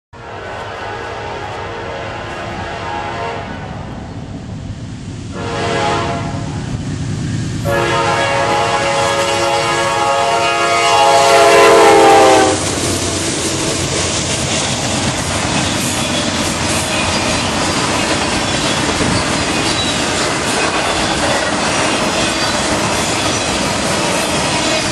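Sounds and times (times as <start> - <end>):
locomotive horn blasts: 0.2 - 3.9, 5.3 - 6.5, 7.6 - 12.8
train rumbling and clattering past: 0.2 - 24.9.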